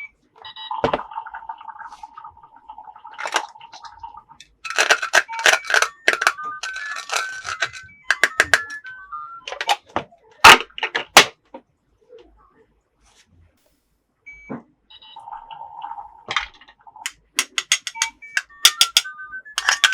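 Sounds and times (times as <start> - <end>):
plastic parts clicking: 3.2 - 3.5, 4.4 - 8.8, 9.5 - 9.8, 17.1 - 19.9.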